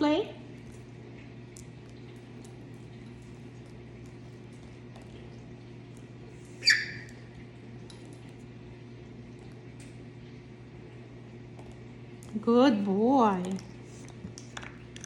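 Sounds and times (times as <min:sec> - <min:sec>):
steady low hum: 0:00.0 - 0:15.0
parrot squawking: 0:06.6 - 0:07.2.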